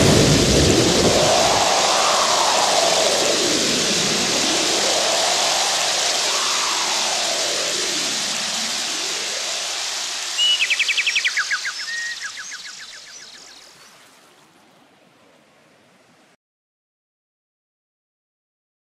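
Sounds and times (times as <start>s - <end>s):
steady rushing noise: 0.0s - 16.4s
songbird trill: 8.0s - 14.8s.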